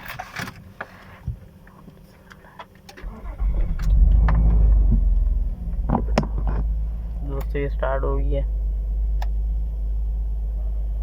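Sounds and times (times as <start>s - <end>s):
car engine cranking and running: 2.8s - 11.0s.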